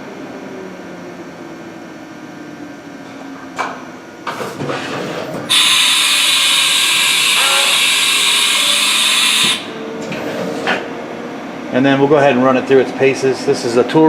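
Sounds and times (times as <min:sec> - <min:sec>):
compressed air hissing: 0:05.5 - 0:09.8.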